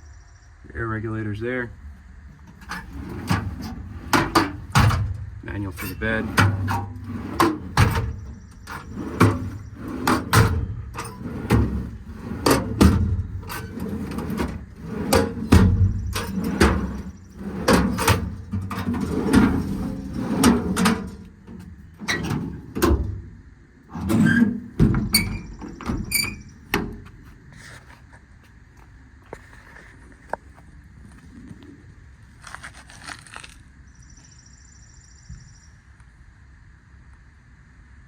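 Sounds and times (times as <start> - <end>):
metal doors clunking shut: 1.7 - 27.2
latch clicks: 2.3 - 23.3.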